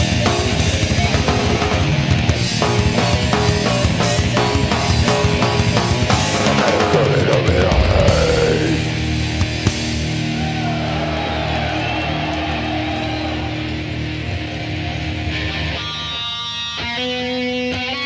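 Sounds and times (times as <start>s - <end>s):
heavy metal band playing: 0.0s - 18.0s.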